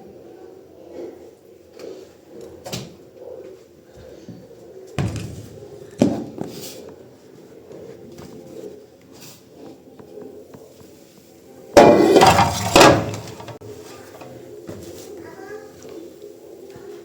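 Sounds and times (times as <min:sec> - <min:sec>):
household knocks and thumps: 0:05.0 - 0:06.5, 0:11.8 - 0:13.6.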